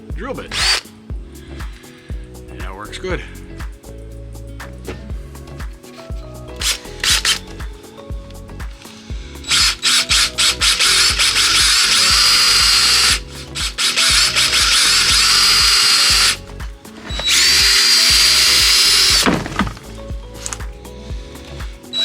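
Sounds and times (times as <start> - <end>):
electric drill whining: 0.5 - 0.9, 6.5 - 7.9, 8.8 - 20.6.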